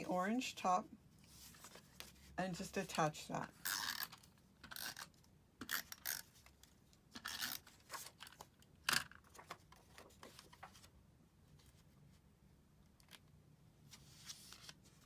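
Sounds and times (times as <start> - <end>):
paper rustling and crinkling: 1.3 - 2.4, 7.6 - 8.6, 9.2 - 11.0, 13.9 - 15.0.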